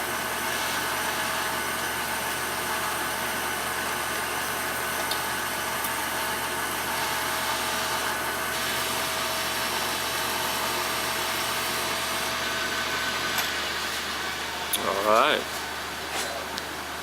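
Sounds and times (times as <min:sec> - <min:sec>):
lathe hum: 0:00.0 - 0:17.0
lathe whining: 0:00.0 - 0:17.0.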